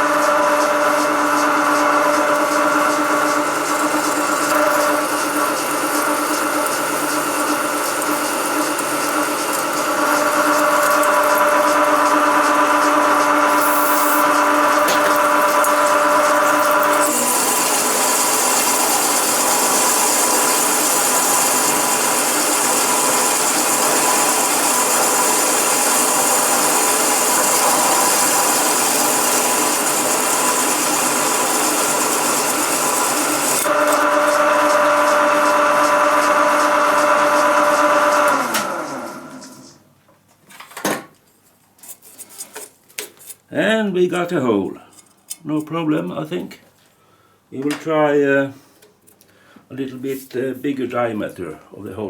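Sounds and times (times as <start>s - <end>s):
hole saw grinding steel: 0.0s - 38.4s
motor humming: 0.0s - 39.8s.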